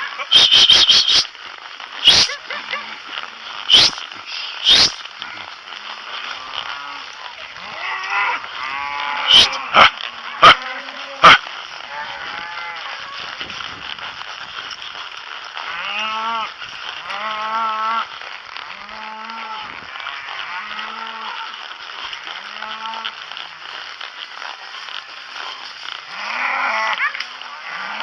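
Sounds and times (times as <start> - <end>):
cattle mooing: 6.3 - 13.0, 18.7 - 21.6, 22.2 - 23.2, 26.1 - 28.0.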